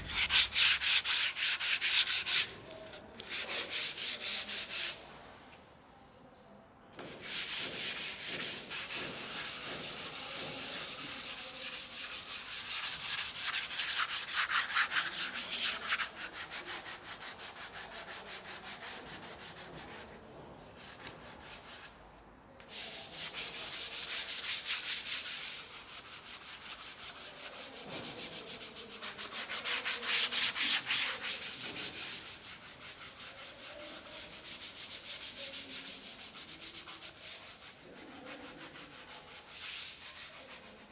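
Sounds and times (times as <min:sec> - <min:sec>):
sandpaper rasping on surface: 0:00.0 - 0:02.6, 0:07.5 - 0:16.9, 0:22.8 - 0:40.8.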